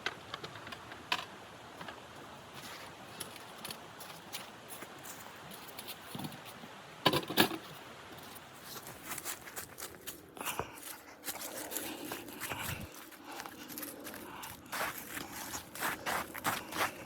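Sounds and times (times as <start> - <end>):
crunching and crinkling handling: 8.2 - 17.0.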